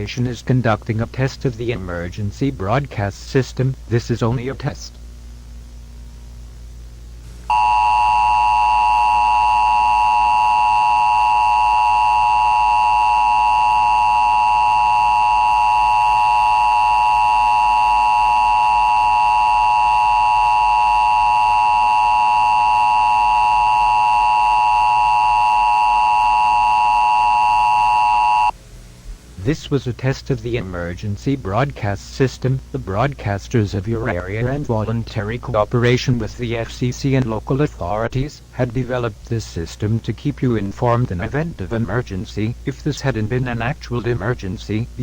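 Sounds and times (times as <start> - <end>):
two-tone alarm: 7.5 - 28.5.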